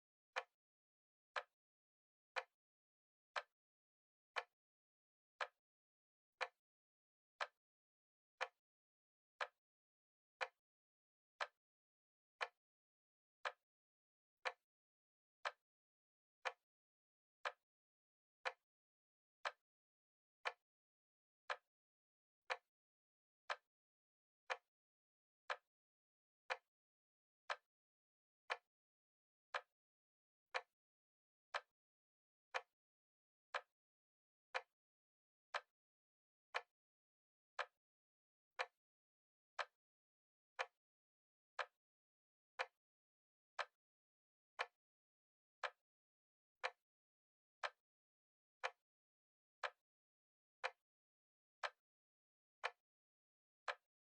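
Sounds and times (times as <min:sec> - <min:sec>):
clock ticking: 0:38.6 - 0:38.8.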